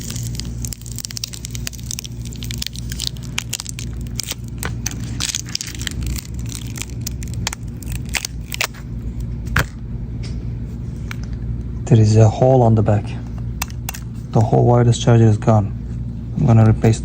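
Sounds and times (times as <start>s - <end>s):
tools clicking and crackling: 0.0s - 9.3s, 13.6s - 14.1s
steady low hum: 0.0s - 17.0s.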